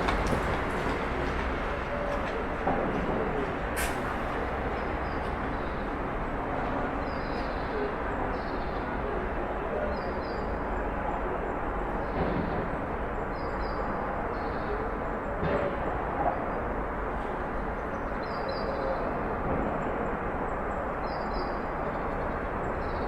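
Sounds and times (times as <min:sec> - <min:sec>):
low outdoor rumble: 0:00.0 - 0:07.2.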